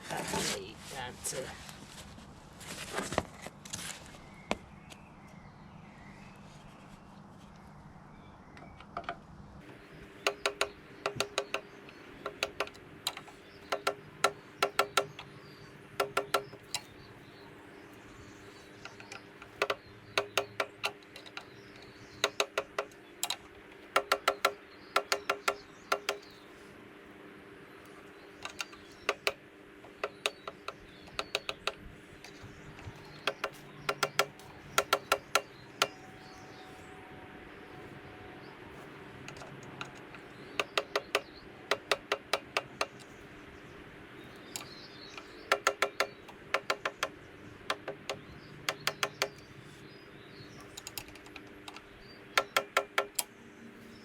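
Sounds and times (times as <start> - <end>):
mower blades ticking: 9.6 - 26.7, 27.7 - 36.7, 38.7 - 54.0.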